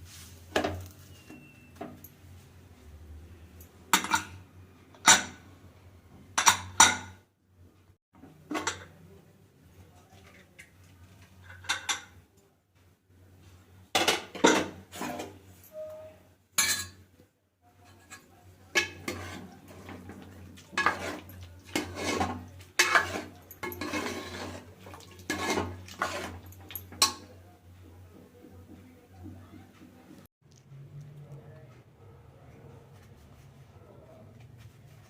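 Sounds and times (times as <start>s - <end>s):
utensils and dishes clinking: 3.6s - 5.4s, 8.5s - 9.0s, 10.2s - 12.2s, 14.0s - 17.0s, 17.8s - 27.4s.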